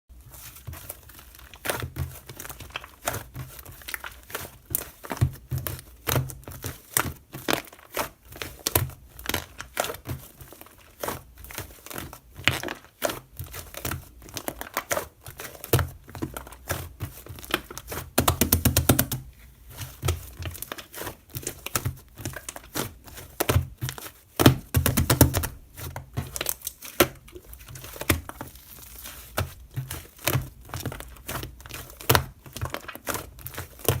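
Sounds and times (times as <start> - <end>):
crinkling handling noise: 0.1 - 34.0.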